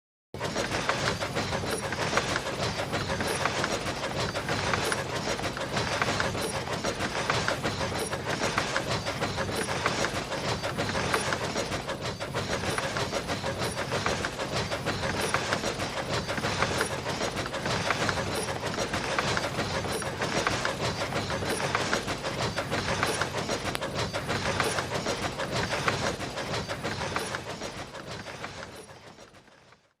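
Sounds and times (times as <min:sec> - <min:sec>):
steam locomotive puffing: 0:00.4 - 0:29.6
train cars rattling on rails: 0:00.4 - 0:29.9.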